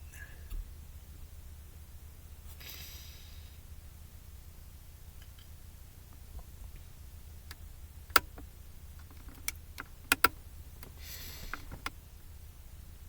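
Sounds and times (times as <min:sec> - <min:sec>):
sharp clicks and taps: 0:07.5 - 0:12.0.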